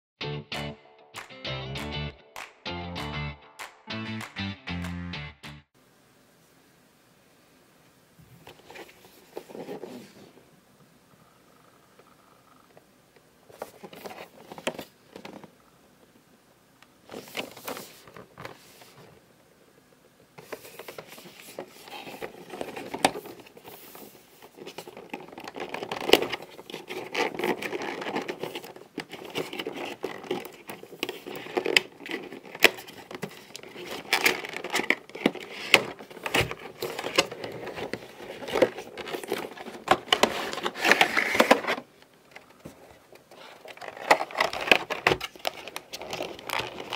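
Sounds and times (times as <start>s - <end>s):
packaging rustling and crinkling: 17.0s - 19.2s, 20.4s - 46.9s.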